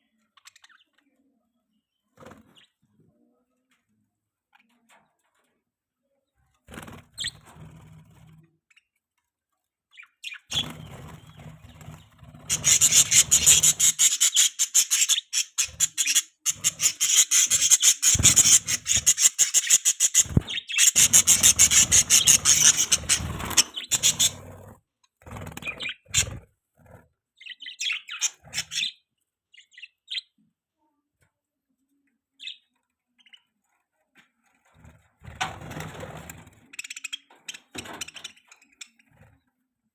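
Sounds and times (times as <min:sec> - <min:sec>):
budgerigars chirping and chattering: 0:09.9 - 0:24.7, 0:25.4 - 0:26.4, 0:27.4 - 0:30.3, 0:32.4 - 0:33.5, 0:36.6 - 0:39.3.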